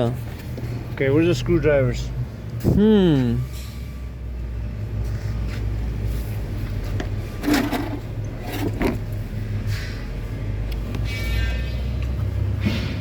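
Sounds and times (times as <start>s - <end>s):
metal tools scraping and clattering: 7.4s - 9.1s.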